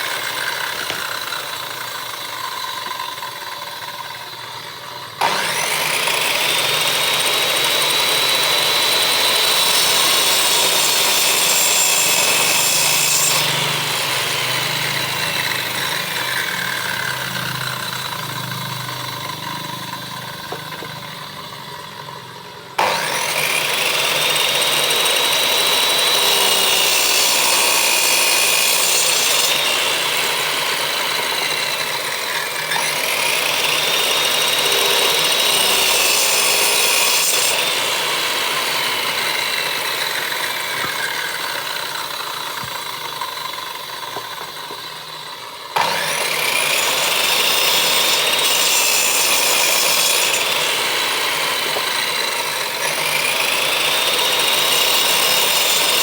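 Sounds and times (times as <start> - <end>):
power tool motor whine: 0.0 - 56.0.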